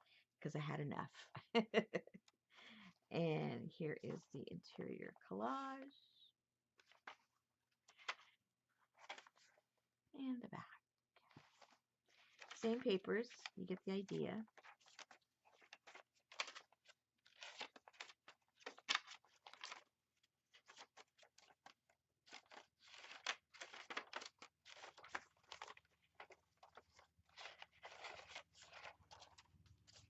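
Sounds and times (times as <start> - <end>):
paper pages rustling and crinkling: 6.8 - 9.7, 11.2 - 30.0.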